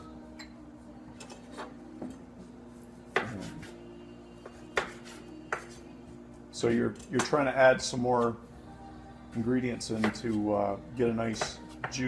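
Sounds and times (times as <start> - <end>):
faint steady hum: 0.0 - 6.7, 7.6 - 10.0.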